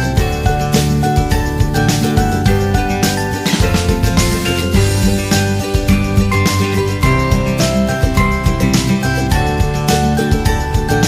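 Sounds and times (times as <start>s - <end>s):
upbeat instrumental music: 0.0s - 11.0s.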